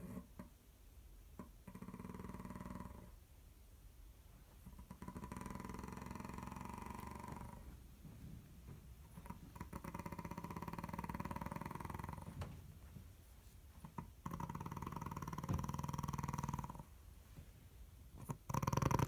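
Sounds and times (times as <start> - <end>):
person snoring: 4.9 - 7.6, 18.5 - 19.0.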